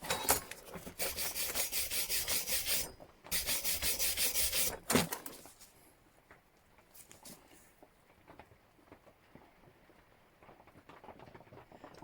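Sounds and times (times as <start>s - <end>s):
rubbing on metal tool: 0.0s - 4.8s.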